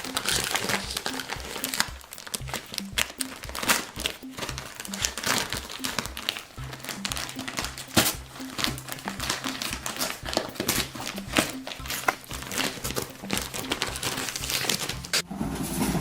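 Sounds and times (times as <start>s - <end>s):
music with stepping bass line: 0.0s - 15.2s
sharp crinkling clicks: 0.0s - 15.3s.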